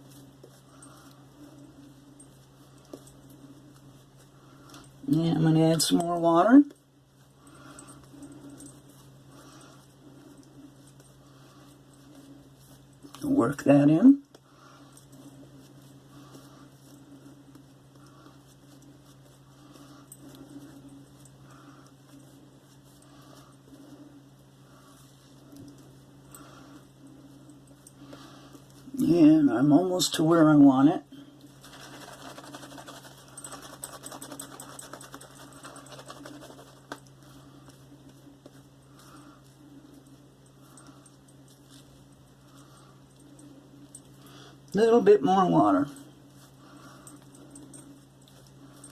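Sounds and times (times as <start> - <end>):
shaving brush swirling lather: 0.0 - 4.4, 31.6 - 40.0.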